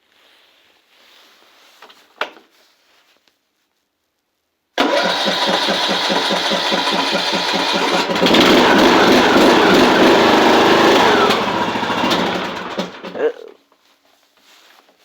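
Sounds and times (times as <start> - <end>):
starter cranking engine: 4.8 - 13.2
lawn tractor engine running: 4.8 - 13.3.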